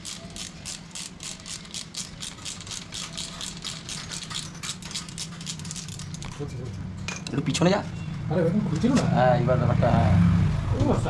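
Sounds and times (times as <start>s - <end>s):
ratchet wrench clicking: 0.0s - 6.3s.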